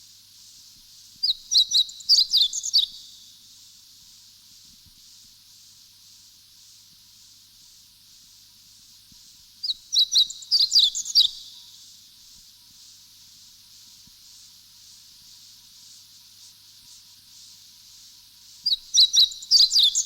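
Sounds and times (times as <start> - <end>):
steady high hiss: 0.0 - 20.0
bird chirping: 9.6 - 11.6, 18.7 - 20.0.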